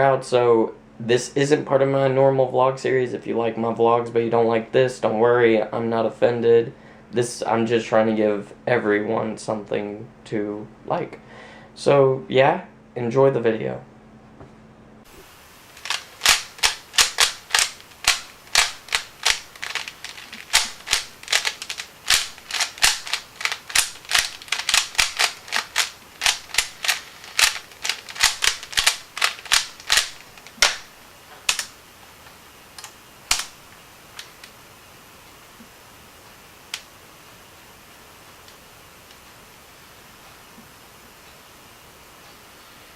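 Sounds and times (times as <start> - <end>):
puzzle cube layers clacking: 15.7 - 31.7, 32.8 - 33.6.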